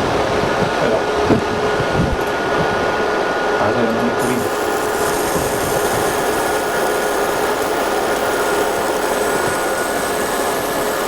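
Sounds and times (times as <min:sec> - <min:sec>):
thin steady whine: 0:00.0 - 0:11.0
laser engraver hum and hiss: 0:04.1 - 0:11.0.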